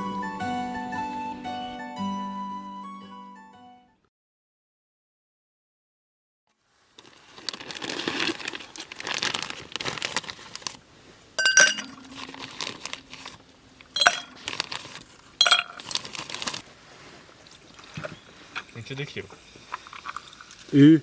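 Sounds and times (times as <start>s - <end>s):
crinkling and rustling: 6.5s - 20.7s
tableware clinking: 11.4s - 12.4s, 14.0s - 14.4s, 15.4s - 15.9s.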